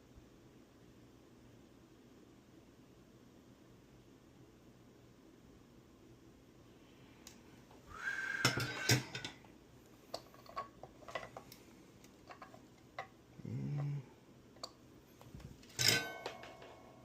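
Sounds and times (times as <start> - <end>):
small tools clicking and tapping: 10.1 - 14.0, 15.7 - 16.9
metallic ring: 15.7 - 17.0.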